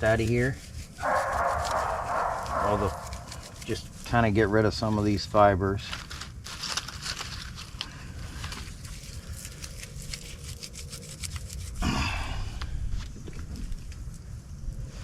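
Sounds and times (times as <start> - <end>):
bark fibers crackling and rustling: 0.0 - 11.8.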